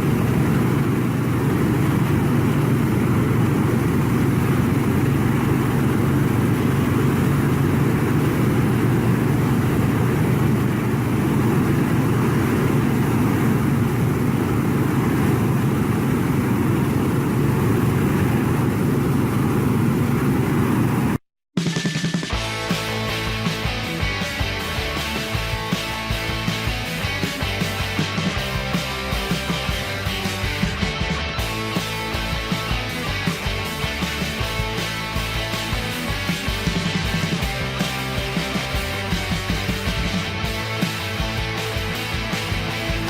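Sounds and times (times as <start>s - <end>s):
large machine engine drone: 0.0s - 21.2s, 31.4s - 43.0s.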